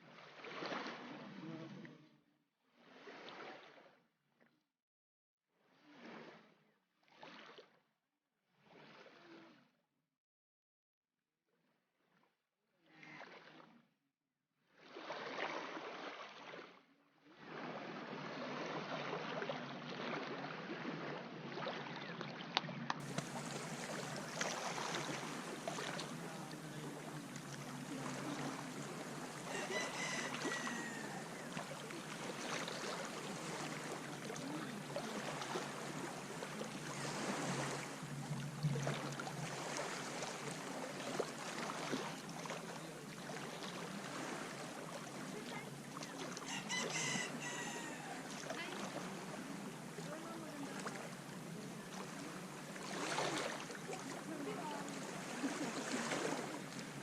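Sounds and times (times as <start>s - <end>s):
sea waves washing in: 23.0s - 57.0s.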